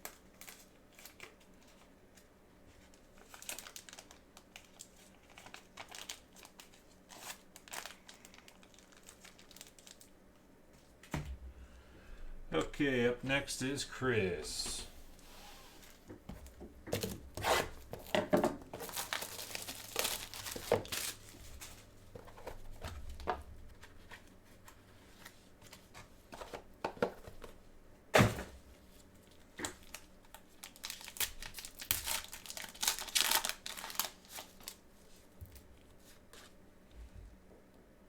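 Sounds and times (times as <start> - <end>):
plastic wrapping crinkling and tearing: 0.0 - 10.2, 16.9 - 22.6, 29.0 - 34.8.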